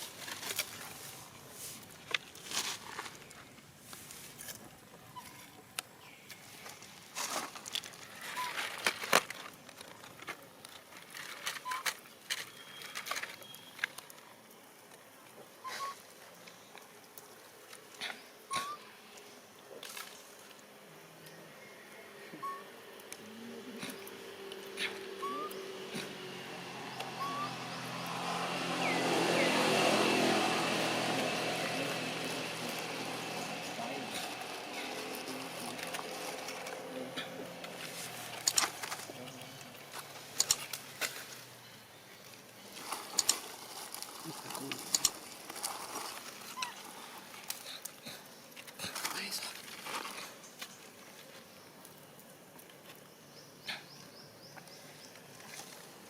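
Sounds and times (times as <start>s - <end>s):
monkeys rustling and feeding: 0.0s - 56.0s
monkey chirps: 15.6s - 16.0s, 18.5s - 18.9s, 22.4s - 22.7s, 24.8s - 25.6s, 27.0s - 28.0s, 46.5s - 46.8s
vehicle passing by: 23.2s - 41.6s.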